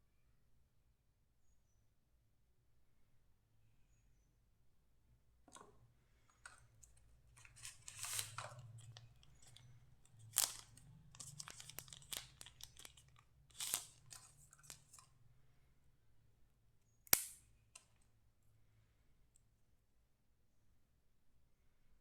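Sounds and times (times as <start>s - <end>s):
packaging rustling and tearing: 7.3s - 15.0s.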